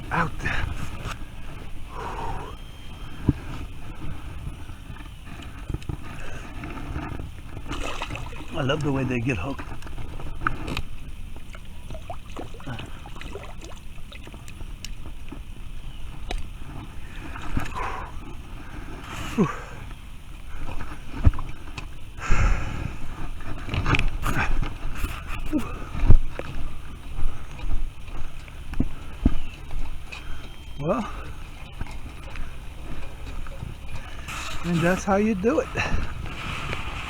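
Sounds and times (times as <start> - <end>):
river flowing: 0.0 - 14.4, 16.1 - 37.0
water splashes: 0.0 - 37.0
wind on microphone: 0.0 - 37.0.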